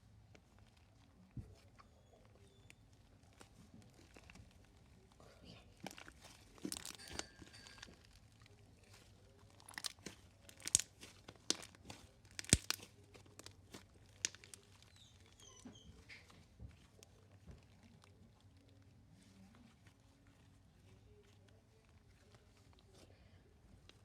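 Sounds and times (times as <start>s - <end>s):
slime wet clicks and pops: 9.7s - 14.6s.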